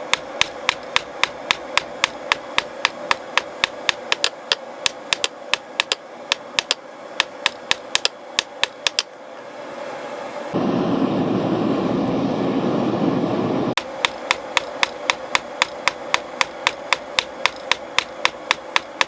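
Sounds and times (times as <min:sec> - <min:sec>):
hammer blows on metal: 0:00.0 - 0:09.1, 0:13.8 - 0:19.0
loud steady rushing roar: 0:08.4 - 0:16.5.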